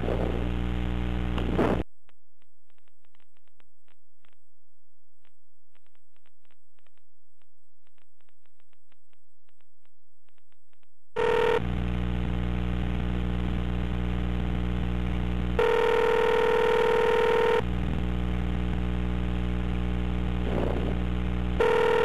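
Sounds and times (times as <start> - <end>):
low hum on phone line: 0.0 - 5.1, 11.2 - 22.0
telephone ringback tone: 11.2 - 11.6, 15.6 - 17.6, 21.6 - 22.0.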